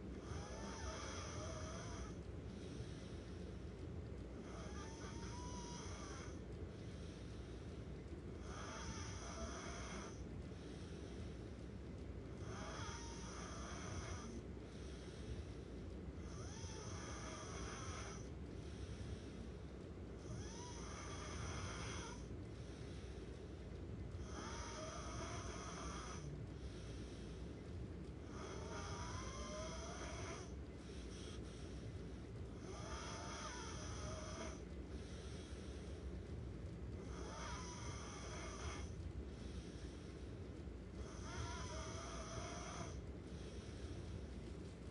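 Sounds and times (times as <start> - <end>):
person snoring: 0.2 - 2.2, 4.4 - 6.4, 8.4 - 10.2, 12.4 - 15.0, 16.2 - 18.3, 20.2 - 22.3, 24.2 - 26.9, 28.2 - 31.5, 32.6 - 35.5, 37.0 - 39.7, 41.0 - 43.7.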